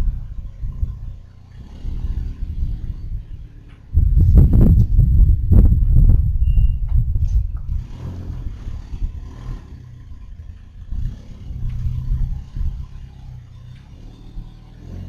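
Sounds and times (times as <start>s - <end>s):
low drivetrain rumble: 0.0s - 15.0s.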